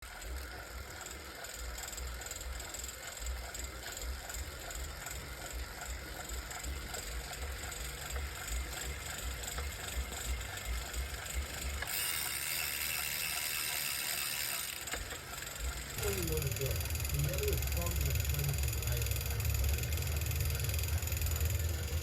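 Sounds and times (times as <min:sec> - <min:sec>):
whirring hiss of bike trainer: 0:00.1 - 0:22.0.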